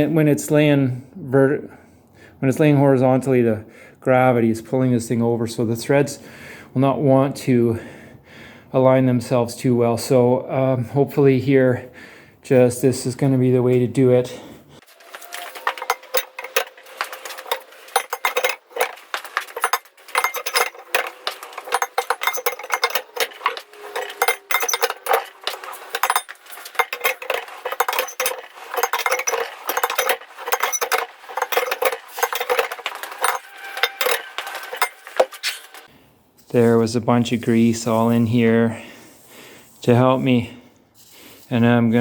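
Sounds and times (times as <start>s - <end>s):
metallic clinks and rattles: 14.8s - 35.9s.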